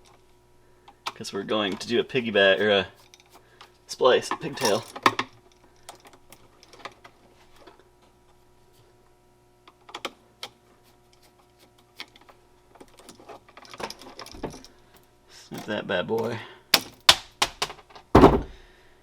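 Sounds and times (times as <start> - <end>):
faint steady hum: 0.0 - 19.0
hands clicking wall outlet wires: 16.2 - 18.1.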